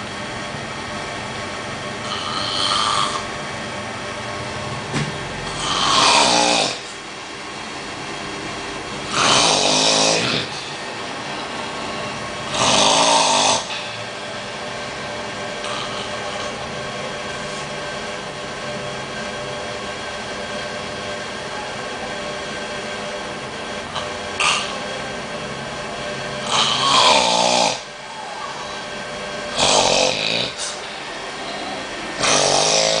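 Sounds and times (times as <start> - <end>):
steady background hum: 0.0 - 33.0
man snoring: 2.0 - 3.3, 5.5 - 6.9, 9.0 - 10.7, 12.4 - 13.8, 15.6 - 16.6, 26.4 - 27.9, 29.5 - 30.8, 32.2 - 33.0.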